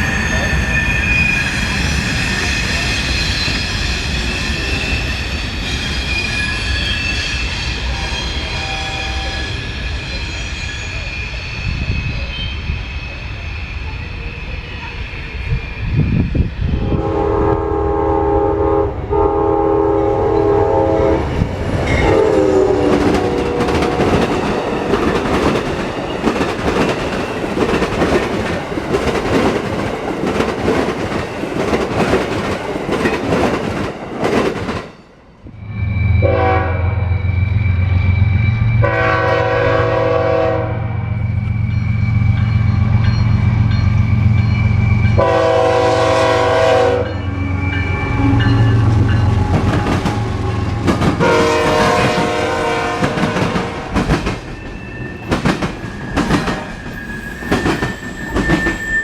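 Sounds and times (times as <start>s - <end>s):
train cars rattling past: 0.0s - 59.0s
locomotive air horn: 7.9s - 9.4s, 16.8s - 21.3s, 21.9s - 24.2s, 36.2s - 37.2s, 38.8s - 41.0s, 45.2s - 47.4s, 50.2s - 54.0s.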